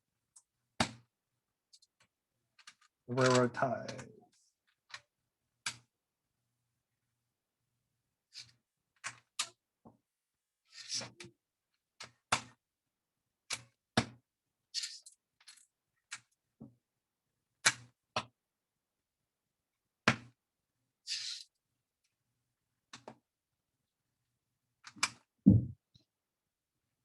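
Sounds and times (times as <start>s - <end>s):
plastic bricks clicking: 1.7s - 4.0s.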